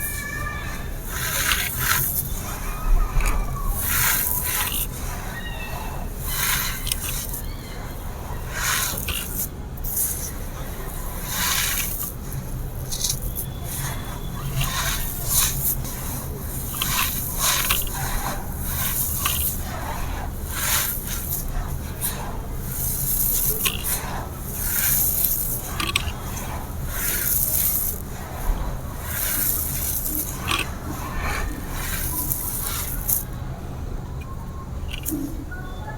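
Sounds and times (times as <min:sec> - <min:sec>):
concrete crunching and scraping: 0:00.0 - 0:33.5, 0:34.8 - 0:35.5.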